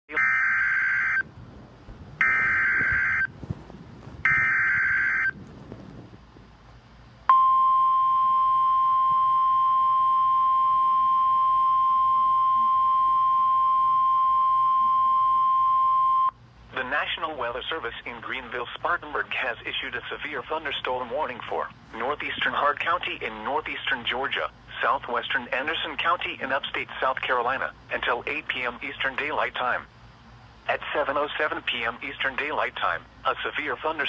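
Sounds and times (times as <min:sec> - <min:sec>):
steady alarm tone: 0:00.1 - 0:01.3, 0:02.2 - 0:03.4, 0:04.2 - 0:05.4, 0:07.3 - 0:16.3.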